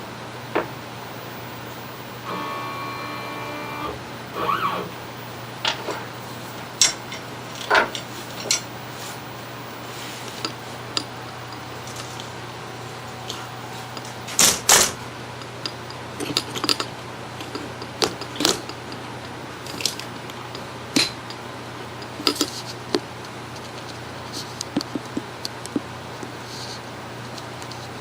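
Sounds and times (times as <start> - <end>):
steady low hum: 1.0 - 5.6.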